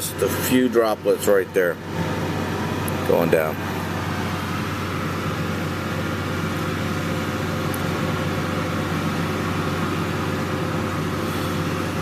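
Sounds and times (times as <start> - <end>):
machine hum: 0.0 - 12.0
fan-like rushing noise: 1.8 - 12.0.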